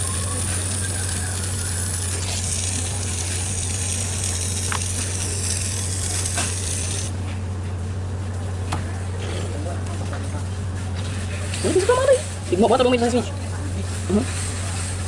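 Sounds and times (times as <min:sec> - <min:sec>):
loud hissing: 0:00.0 - 0:07.1.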